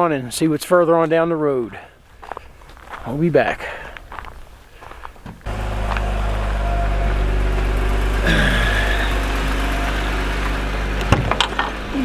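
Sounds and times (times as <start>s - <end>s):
car engine droning while driving: 5.4s - 12.0s.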